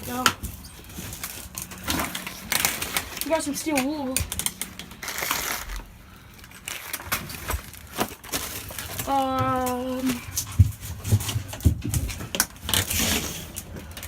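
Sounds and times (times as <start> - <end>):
items clattering and crinkling: 0.0 - 14.0.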